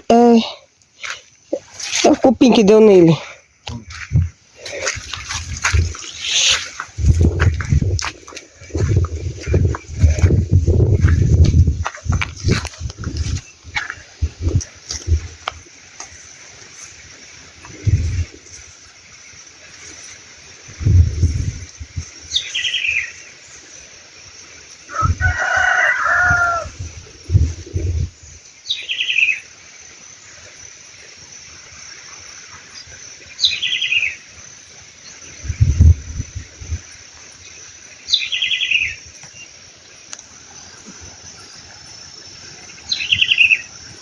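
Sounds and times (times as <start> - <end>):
rooster crowing: 24.9 - 26.9.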